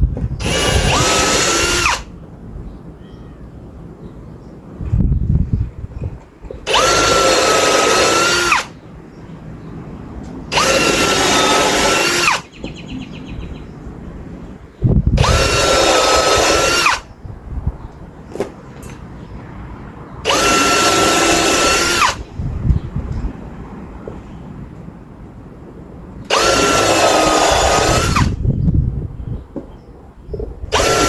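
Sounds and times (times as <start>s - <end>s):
power drill driving screws: 0.4s - 2.1s, 6.6s - 8.8s, 10.5s - 12.4s, 15.2s - 17.1s, 20.2s - 22.3s, 26.3s - 28.4s, 30.7s - 31.0s.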